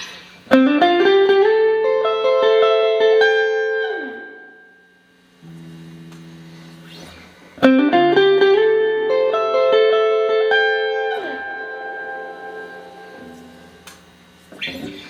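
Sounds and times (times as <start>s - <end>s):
clean electric guitar with reverb: 0.0s - 15.0s.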